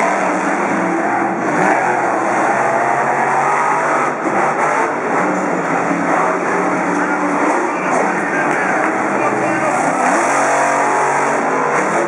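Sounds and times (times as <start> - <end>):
truck engines revving: 0.0 - 12.0.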